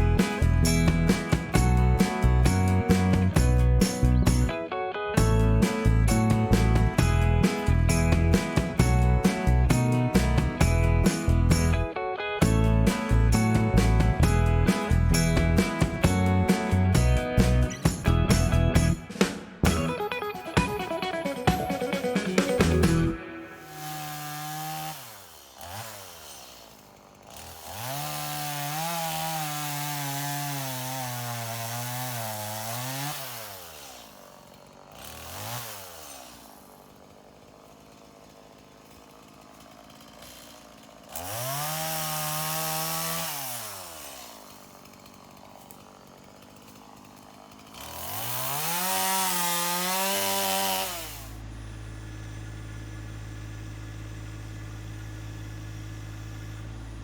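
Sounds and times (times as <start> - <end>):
low engine hum: 0.0 - 4.5, 5.2 - 19.0
chainsaw revving: 0.0 - 4.6, 5.2 - 20.1, 20.9 - 57.0.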